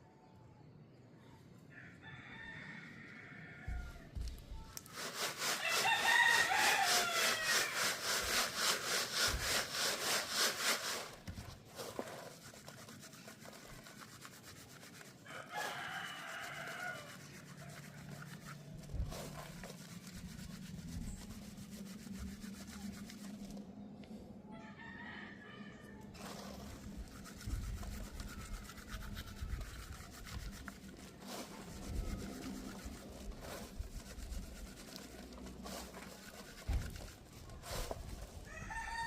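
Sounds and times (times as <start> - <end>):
rooster crowing: 1.7 - 4.1, 5.6 - 7.8, 15.3 - 17.2, 24.5 - 26.1, 38.5 - 39.0
loud rhythmic rasping strokes: 4.9 - 11.2, 12.1 - 23.5, 26.2 - 37.7.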